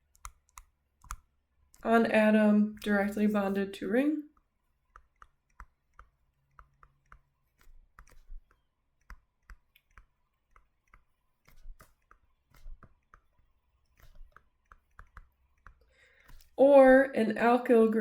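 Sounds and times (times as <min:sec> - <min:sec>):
pen tapping while writing: 0:04.4 - 0:16.6.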